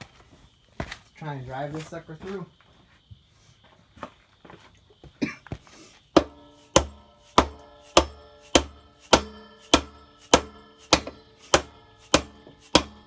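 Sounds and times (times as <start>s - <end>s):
mallet striking metal axle: 6.2s - 13.0s
metal axle ringing: 6.2s - 13.0s.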